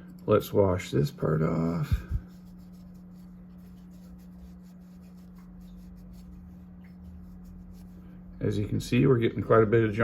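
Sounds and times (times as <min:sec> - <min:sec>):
steady low hum: 0:00.0 - 0:10.0
cloth rubbing metal: 0:01.9 - 0:08.2.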